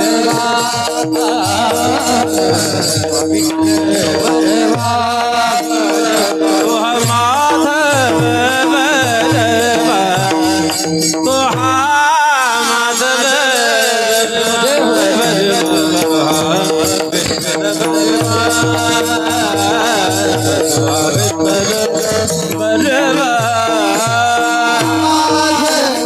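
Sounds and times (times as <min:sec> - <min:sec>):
steady drone: 0:00.0 - 0:06.8
man singing devotional song: 0:00.0 - 0:26.0.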